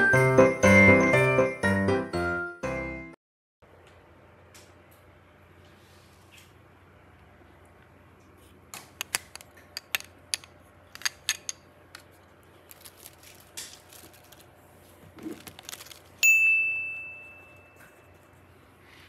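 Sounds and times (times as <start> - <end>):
clicks of hard objects handled: 8.8 - 12.1
bright ding: 16.2 - 18.2.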